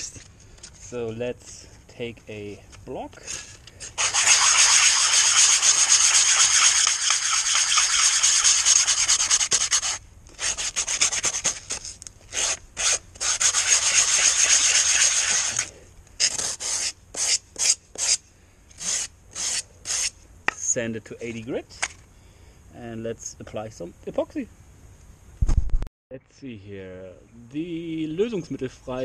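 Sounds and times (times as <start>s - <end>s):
hand sanding with sandpaper: 3.3s - 18.2s, 18.8s - 20.2s.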